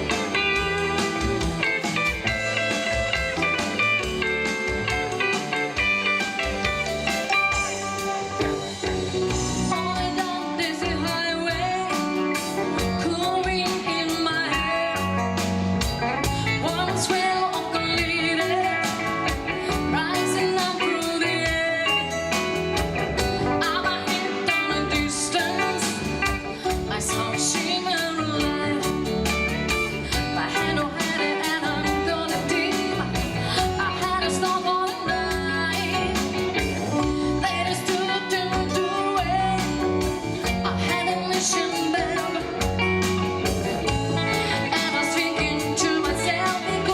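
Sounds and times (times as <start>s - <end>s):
bass guitar: 0.0s - 46.9s
drum kit beat: 0.0s - 46.9s
electric guitar: 0.0s - 46.9s
keyboards: 0.0s - 46.9s
person singing: 9.5s - 15.2s, 16.4s - 22.2s, 23.4s - 43.2s, 43.8s - 46.9s.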